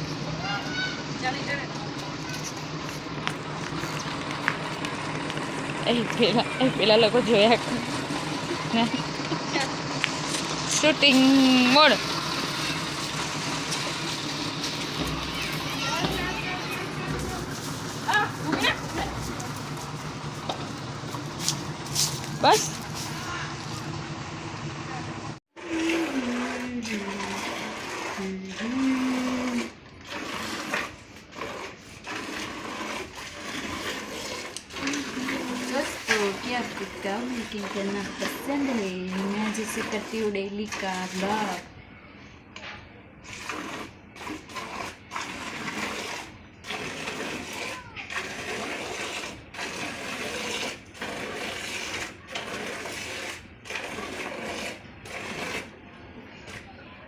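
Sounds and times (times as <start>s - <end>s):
milk squirting into a pail: 29.0s - 41.3s, 43.2s - 55.8s.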